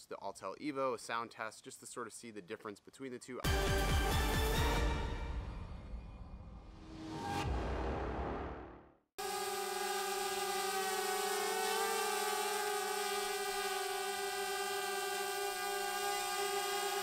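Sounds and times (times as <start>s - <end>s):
drone propellers buzzing: 9.2s - 17.0s.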